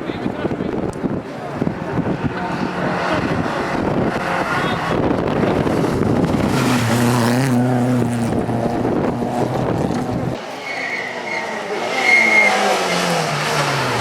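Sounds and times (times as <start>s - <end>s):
rally car engine: 0.0s - 14.0s
high squeal: 10.5s - 12.7s.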